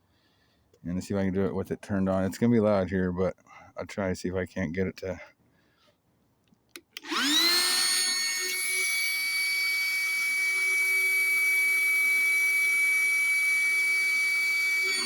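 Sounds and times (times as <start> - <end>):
inflator pump whining: 6.9 - 15.0.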